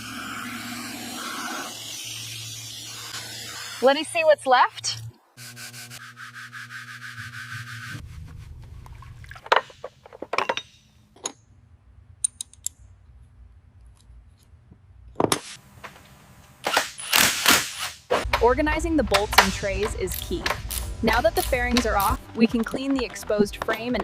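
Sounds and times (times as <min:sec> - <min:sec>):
mechanical whir: 0:00.0 - 0:05.6
sharp clicks and knocks of tools: 0:12.2 - 0:12.8.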